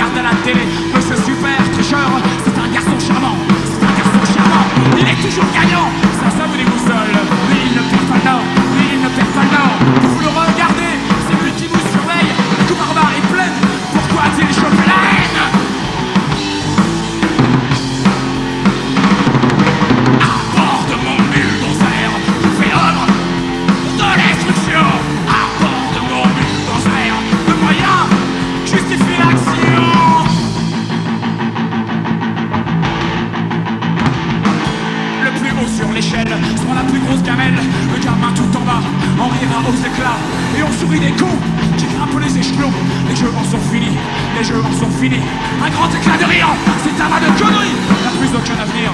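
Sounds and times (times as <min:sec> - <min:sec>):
drum kit: 0:00.0 - 0:48.9
electric guitar: 0:00.0 - 0:48.9
punk rock band playing live: 0:00.0 - 0:48.9.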